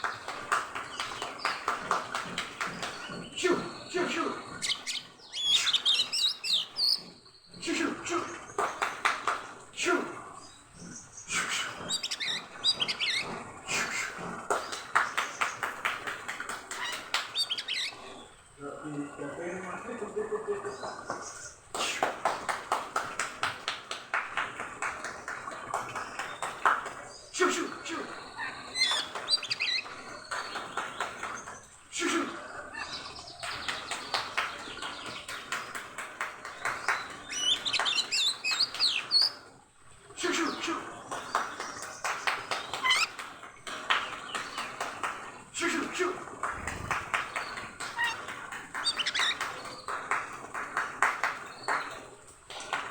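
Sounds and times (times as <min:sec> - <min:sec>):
bird high whistles and glides: 0:00.0 - 0:07.5, 0:10.4 - 0:18.4, 0:25.9 - 0:31.8, 0:32.6 - 0:39.5, 0:41.3 - 0:45.4, 0:46.5 - 0:52.1
bird singing whistled chirping notes: 0:04.6 - 0:07.3, 0:11.3 - 0:14.0, 0:16.9 - 0:18.0, 0:28.1 - 0:30.7, 0:36.9 - 0:39.4, 0:47.3 - 0:49.9.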